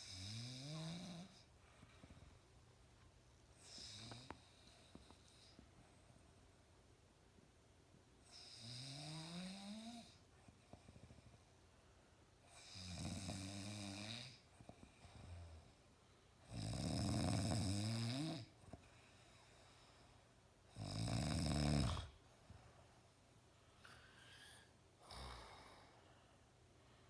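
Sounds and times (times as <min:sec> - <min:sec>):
man snoring loudly: 0:00.0 - 0:01.4, 0:08.3 - 0:10.1, 0:12.6 - 0:14.4, 0:16.5 - 0:18.5, 0:20.7 - 0:22.2.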